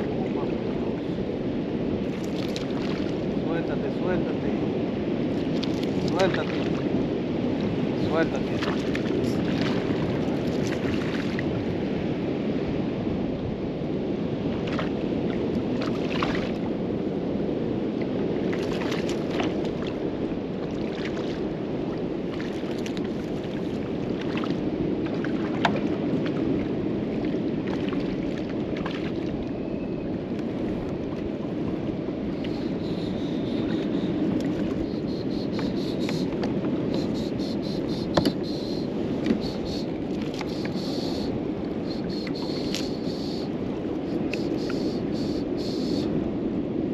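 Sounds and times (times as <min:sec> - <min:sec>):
water lapping against kayak hull: 0:00.0 - 0:03.7, 0:05.2 - 0:11.9, 0:14.5 - 0:16.8, 0:18.0 - 0:46.0
steady rushing wash: 0:00.0 - 0:46.9
insects chirping: 0:32.3 - 0:46.1.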